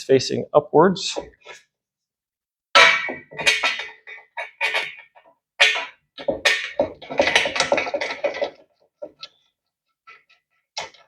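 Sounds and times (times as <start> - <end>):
steel frame parts clanking: 2.8 - 9.3.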